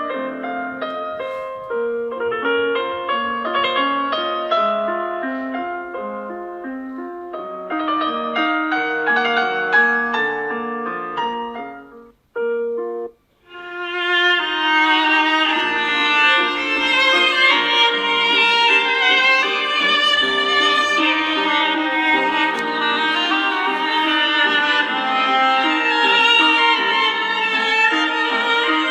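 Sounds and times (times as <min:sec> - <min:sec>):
piano-like ringtone melody: 0:01.8 - 0:28.9
violin ringtone: 0:13.5 - 0:28.9.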